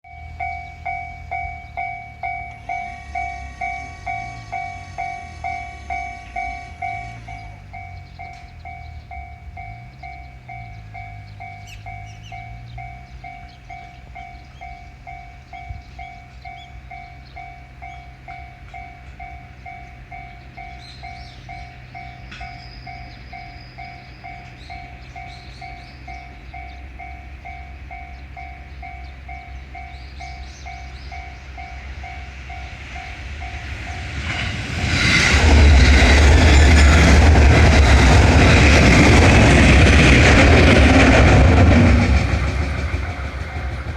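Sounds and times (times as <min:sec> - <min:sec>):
railroad crossing bell ringing: 0:00.0 - 0:43.9
electric train motor hum: 0:00.2 - 0:14.6, 0:23.1 - 0:43.9.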